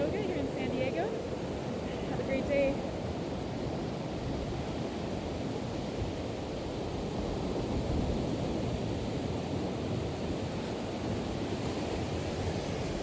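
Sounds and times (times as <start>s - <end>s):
wind noise on microphone: 0.0s - 13.0s.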